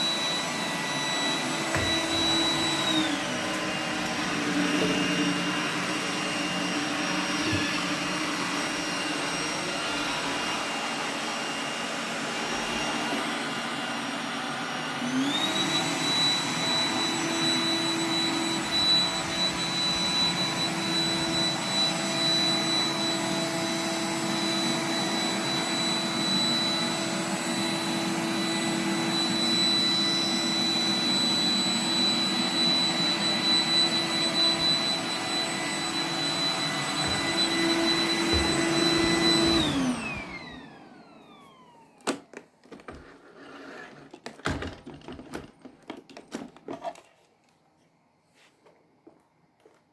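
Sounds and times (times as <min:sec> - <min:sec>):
robot vacuum motor whine: 0:00.0 - 0:42.2.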